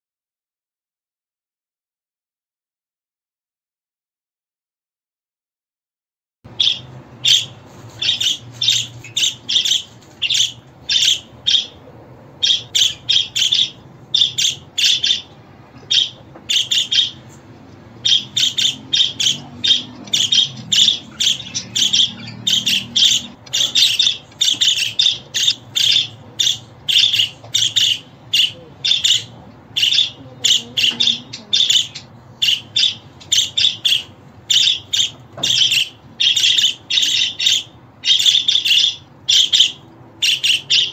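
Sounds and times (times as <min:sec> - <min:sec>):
budgerigars chirping: 0:06.5 - 0:11.8, 0:12.4 - 0:40.9.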